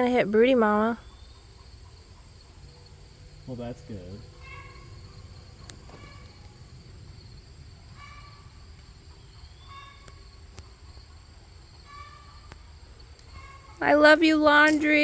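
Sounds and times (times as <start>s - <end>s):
insects droning: 0.0s - 15.0s
low wind rumble: 1.0s - 11.9s.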